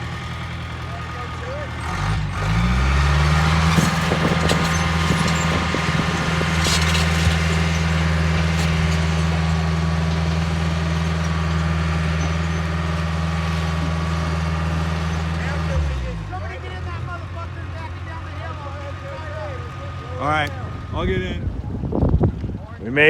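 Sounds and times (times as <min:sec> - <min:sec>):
bulldozer diesel engine revving: 0:00.0 - 0:22.0
metallic clanks: 0:03.6 - 0:11.4.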